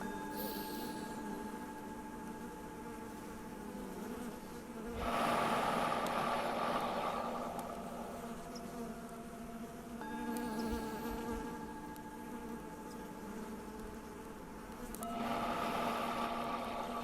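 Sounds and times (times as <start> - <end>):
singing bowl ringing: 0.0 - 3.7, 5.4 - 17.0
honeybees buzzing: 0.0 - 17.0.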